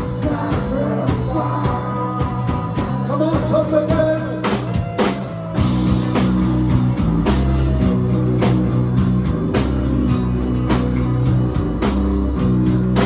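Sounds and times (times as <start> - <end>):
live rock band playing: 0.0 - 13.0.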